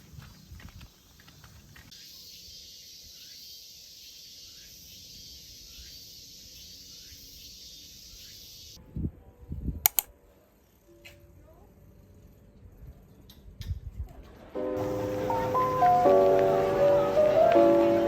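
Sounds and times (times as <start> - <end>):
faint chirp: 1.9 - 8.8
high insect drone: 1.9 - 8.8, 14.8 - 17.8.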